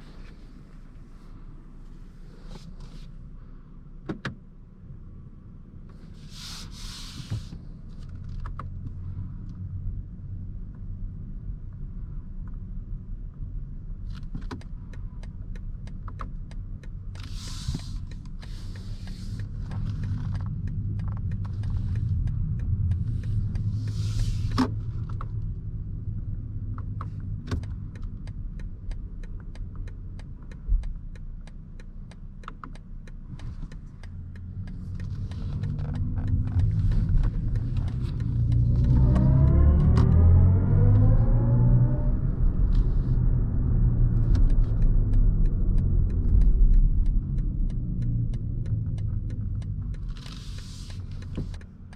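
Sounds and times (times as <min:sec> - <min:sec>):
car road rumble: 0:00.0 - 0:51.9
small clicks: 0:14.1 - 0:25.7, 0:26.6 - 0:51.9
electric drive tone rising: 0:38.3 - 0:44.2.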